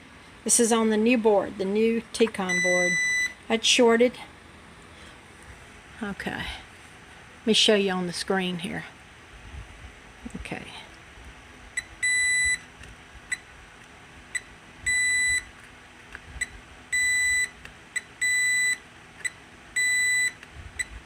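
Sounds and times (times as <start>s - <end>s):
multimeter beeps: 2.5s - 3.4s, 11.8s - 12.7s, 14.4s - 15.5s, 16.4s - 21.0s.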